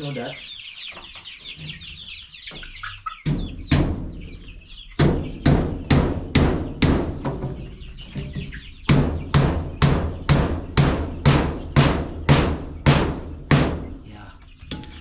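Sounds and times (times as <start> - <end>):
chicks peeping faintly: 0.0 - 15.0
hammer striking wood: 5.0 - 7.2, 8.9 - 13.9.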